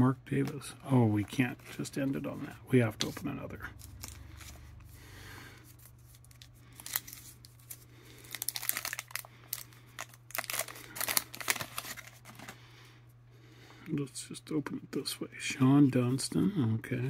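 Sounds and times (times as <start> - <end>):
paper wrapper crinkling and tearing: 3.0 - 5.0, 5.6 - 12.6.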